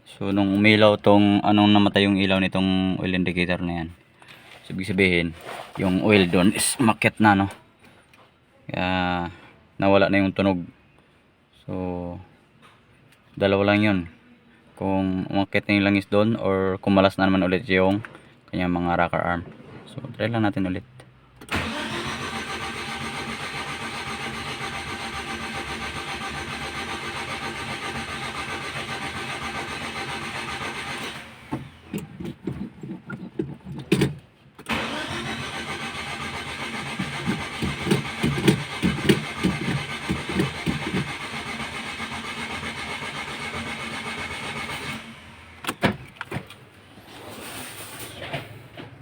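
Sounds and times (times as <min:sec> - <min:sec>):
starter cranking engine: 0:05.4 - 0:07.0, 0:21.5 - 0:32.1, 0:34.7 - 0:45.5.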